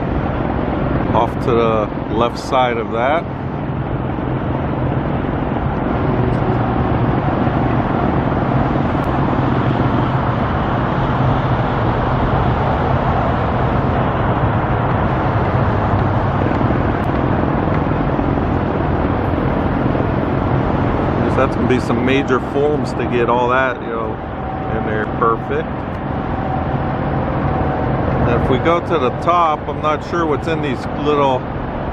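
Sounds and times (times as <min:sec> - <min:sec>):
freeway traffic roar: 0:00.0 - 0:31.9.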